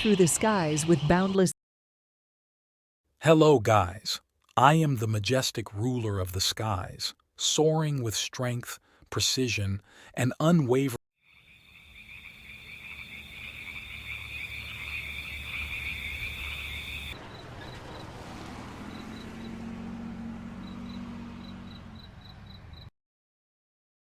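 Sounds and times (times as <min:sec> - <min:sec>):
trilling chorus of small animals: 0:11.3 - 0:18.3.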